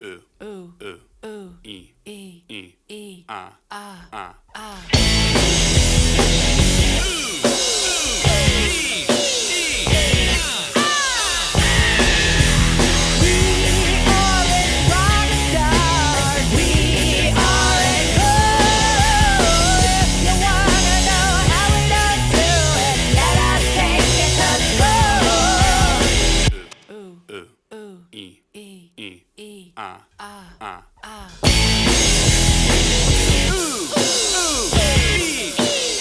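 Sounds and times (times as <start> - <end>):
rock band playing: 4.9 - 26.8, 31.4 - 36.0.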